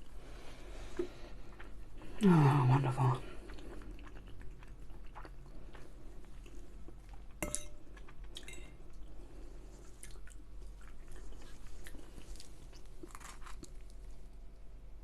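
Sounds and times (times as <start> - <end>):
close chewing: 2.8 - 14.2
cutlery clinking on a plate: 7.4 - 7.8.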